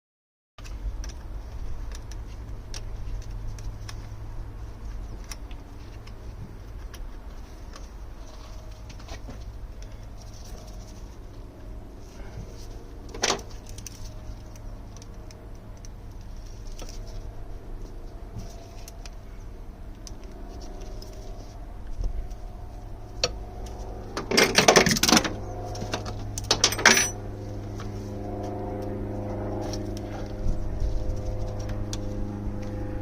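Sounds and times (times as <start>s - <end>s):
steady low hum: 0.6s - 33.0s
metal tools clinking and rattling: 24.2s - 27.3s.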